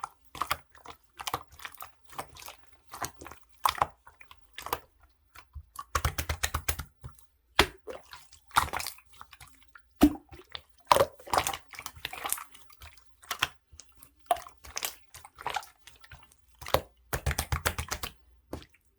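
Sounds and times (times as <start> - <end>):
slime wet clicks and pops: 5.8 - 6.9, 7.6 - 7.9, 10.0 - 10.3.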